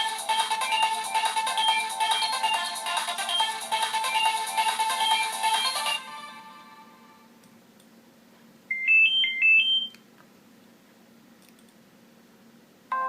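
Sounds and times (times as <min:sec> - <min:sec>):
phone alert tone beeping melody: 0:00.6 - 0:06.0.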